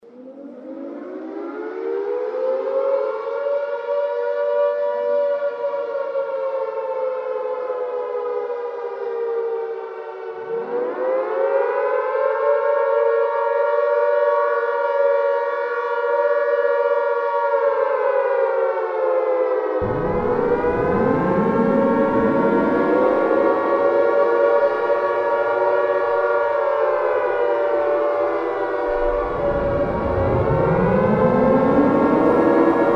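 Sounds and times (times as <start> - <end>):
warning siren wailing: 0.1 - 32.9.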